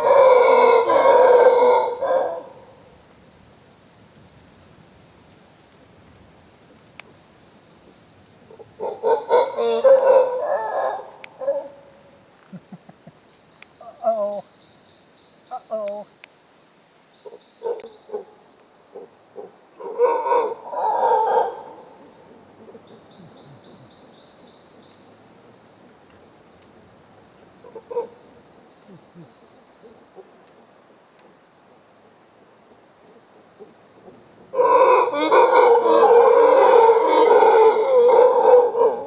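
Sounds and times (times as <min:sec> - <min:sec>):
high-pitched insect drone: 0:19.7 - 0:29.6.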